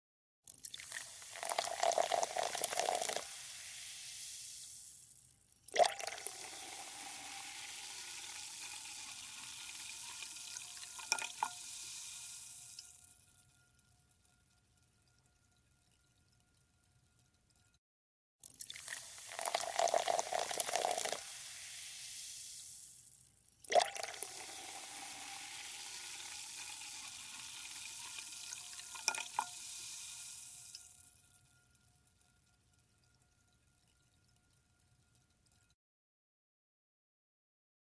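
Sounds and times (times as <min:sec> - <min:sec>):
soda pouring into a glass: 0:00.5 - 0:14.4, 0:18.4 - 0:35.6
carbonation fizzing: 0:00.6 - 0:13.2, 0:18.6 - 0:31.6.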